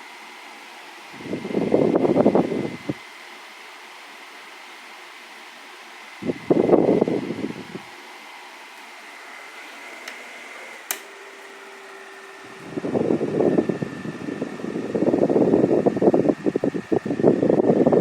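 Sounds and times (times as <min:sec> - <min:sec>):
table fan humming: 0:00.0 - 0:18.0
fan airflow rumbling on microphone: 0:01.1 - 0:03.1, 0:06.1 - 0:18.0
fan switch click: 0:10.8 - 0:11.2.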